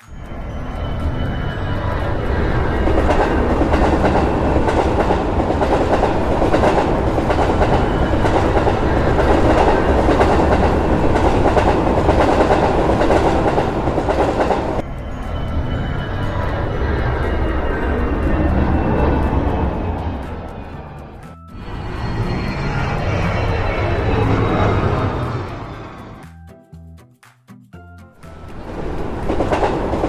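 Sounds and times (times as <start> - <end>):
train wheels rumbling on rails: 0.0 - 26.2, 28.2 - 30.0
clickety-clack over rail joints: 0.2 - 15.6, 28.3 - 30.0.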